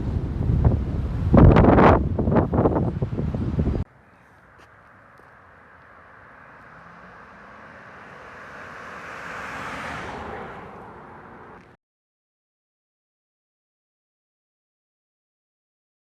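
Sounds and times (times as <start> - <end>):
vehicle passing by: 4.2 - 11.8.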